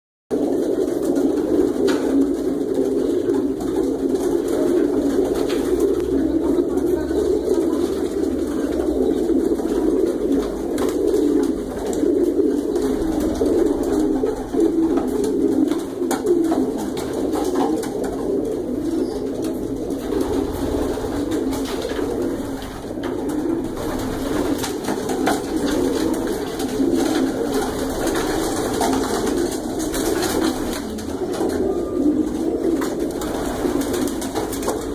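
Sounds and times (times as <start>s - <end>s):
pigeons cooing: 0.3s - 34.9s.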